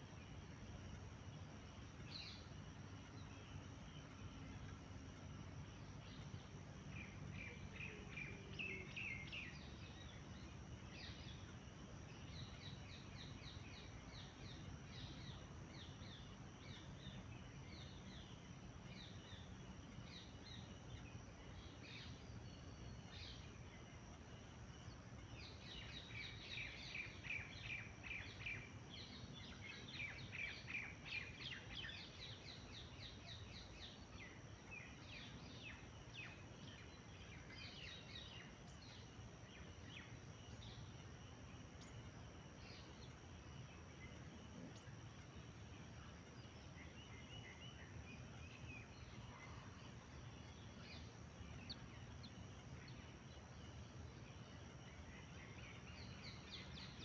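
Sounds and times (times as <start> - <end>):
faint low rumble: 0.0 - 57.0
songbirds chirping: 0.0 - 57.0.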